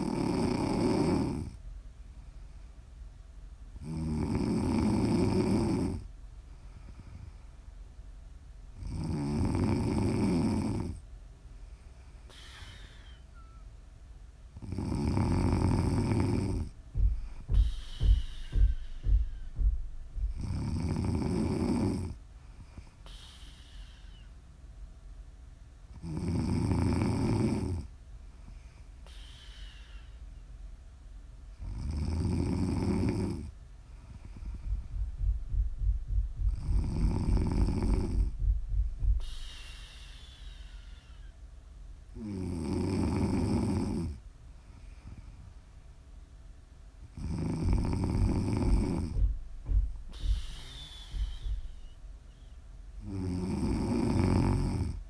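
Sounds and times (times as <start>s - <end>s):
woman snoring: 0.0s - 1.6s, 3.8s - 6.1s, 8.8s - 11.0s, 14.6s - 16.7s, 20.4s - 22.2s, 26.0s - 27.9s, 31.6s - 33.5s, 36.7s - 38.3s, 42.2s - 44.2s, 47.2s - 49.2s, 50.3s - 51.7s, 53.0s - 55.0s.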